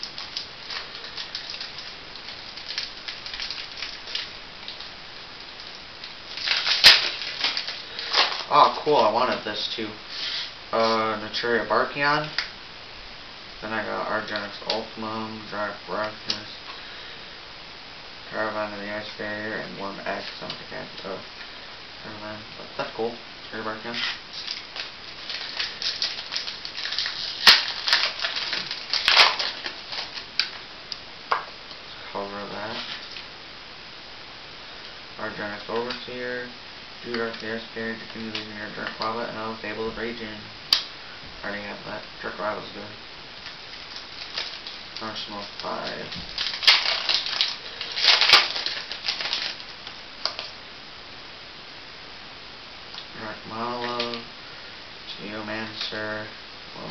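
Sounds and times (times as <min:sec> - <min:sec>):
foil pack crinkling: 0:00.0 - 0:12.5, 0:23.7 - 0:31.4, 0:43.4 - 0:50.6, 0:53.2 - 0:54.3.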